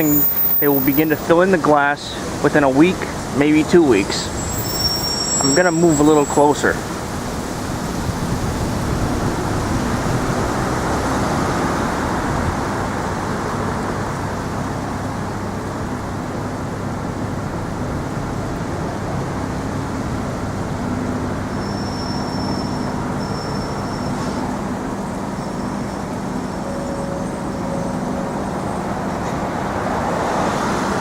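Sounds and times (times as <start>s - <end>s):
thin high whine: 0.0s - 1.3s, 3.9s - 7.4s, 20.2s - 30.3s
street traffic rumble: 0.0s - 31.0s.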